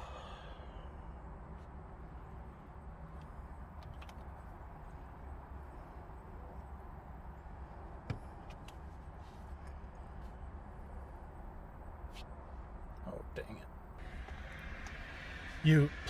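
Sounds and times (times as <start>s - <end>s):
steady low hum: 10.0s - 16.0s.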